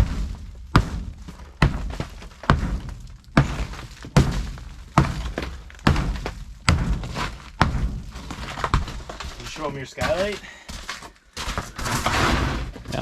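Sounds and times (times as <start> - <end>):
heavy ringing thunks: 5.0 - 8.1.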